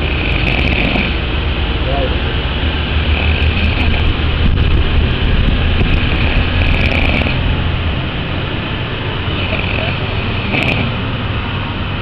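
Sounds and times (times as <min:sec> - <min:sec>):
loud snoring: 0:00.0 - 0:01.2, 0:03.0 - 0:07.6, 0:09.2 - 0:11.0
low rumble: 0:01.1 - 0:12.0.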